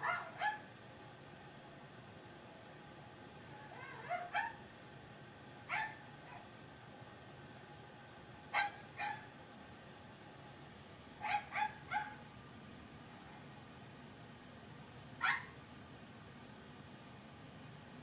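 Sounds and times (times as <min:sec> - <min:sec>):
puppy yipping: 0:00.0 - 0:00.6, 0:03.7 - 0:04.6, 0:05.7 - 0:06.4, 0:08.6 - 0:09.3, 0:11.2 - 0:12.2, 0:15.2 - 0:15.5
faint background hiss: 0:00.0 - 0:18.0.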